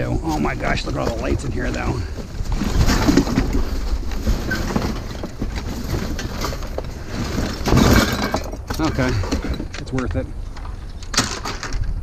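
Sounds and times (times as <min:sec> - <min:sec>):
low rumble of wind: 0:00.0 - 0:12.0
debris knocking in a dumpster: 0:02.5 - 0:09.3.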